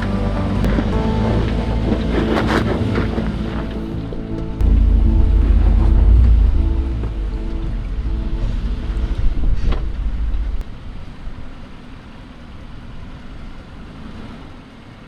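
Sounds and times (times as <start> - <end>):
steady tones: 0.0 - 11.4
suv engine rumble: 0.0 - 15.0
wind buffeting microphone: 0.3 - 11.2.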